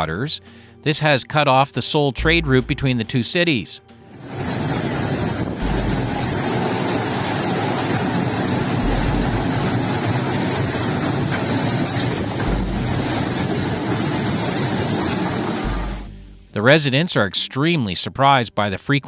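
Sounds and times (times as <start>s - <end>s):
floodwater rushing in a river: 4.2s - 16.1s
deep low rumble: 4.2s - 16.6s.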